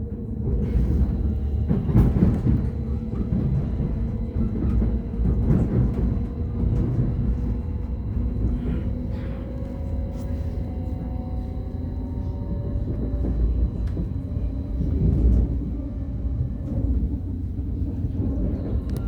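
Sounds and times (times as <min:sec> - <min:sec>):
train rumbling: 0:00.0 - 0:19.0.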